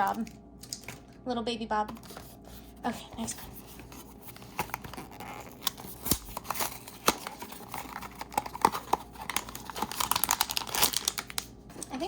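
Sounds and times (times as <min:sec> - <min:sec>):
cardboard and packaging rustling: 0:00.0 - 0:01.2, 0:01.9 - 0:12.0.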